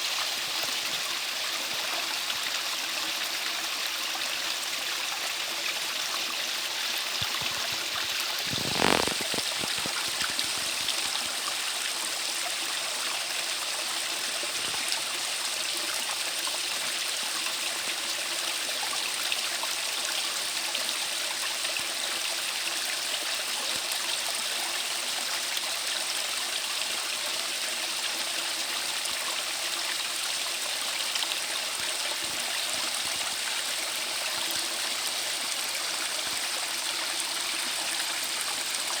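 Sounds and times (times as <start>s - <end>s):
stream flowing: 0.0s - 39.0s.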